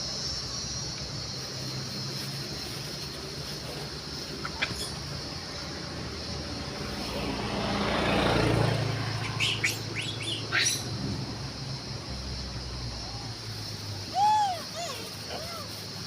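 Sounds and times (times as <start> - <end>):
vehicle passing: 0.3 - 16.0
bird-like chirps: 9.1 - 11.0.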